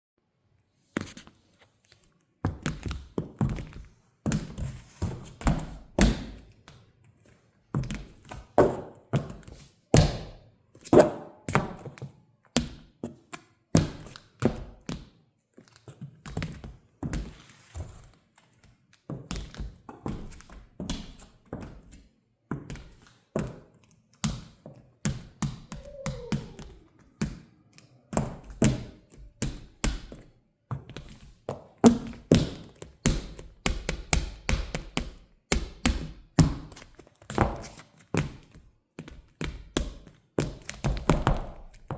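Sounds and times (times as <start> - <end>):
heeled shoes stepping on hard floor: 28.2 - 32.8.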